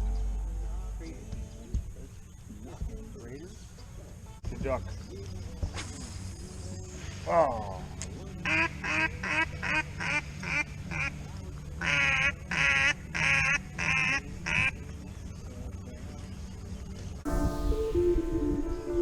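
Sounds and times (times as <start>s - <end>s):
low steady rumble: 0.0s - 2.2s
duck quacking: 8.4s - 11.1s, 11.8s - 14.7s.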